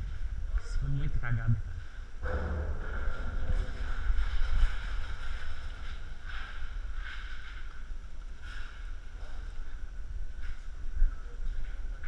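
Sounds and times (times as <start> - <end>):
wind rumbling on microphone: 0.0 - 12.0
faint rustles of movement: 2.9 - 12.0.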